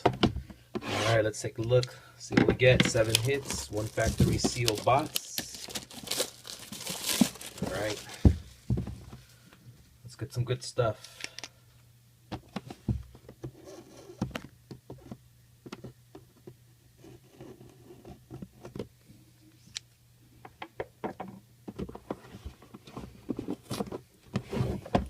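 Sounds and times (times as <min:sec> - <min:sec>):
packaging rustling: 0:02.8 - 0:08.5.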